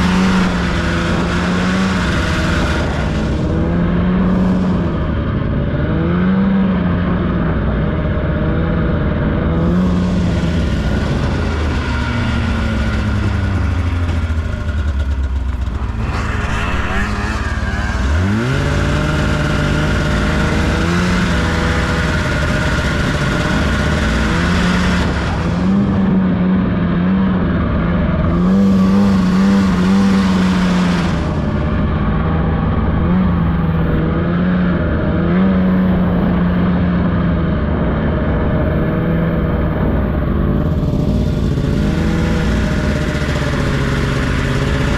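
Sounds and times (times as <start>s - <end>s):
hiss of snow and track: 0.0s - 6.4s, 9.6s - 26.8s, 27.6s - 34.4s, 40.6s - 44.9s
snowmobile engine revving: 0.0s - 44.9s.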